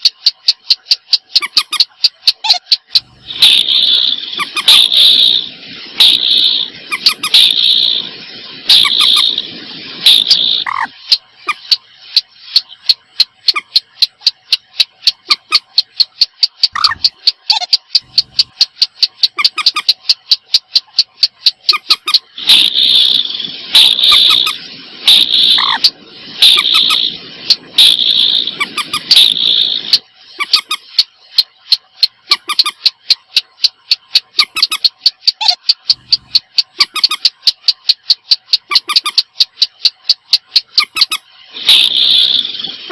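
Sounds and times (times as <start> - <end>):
harsh raspy bird calls: 3.3 - 8.0, 8.7 - 9.4, 16.8 - 17.1, 23.8 - 27.1
sharp clicking bird notes: 10.1 - 23.0, 27.8 - 42.2.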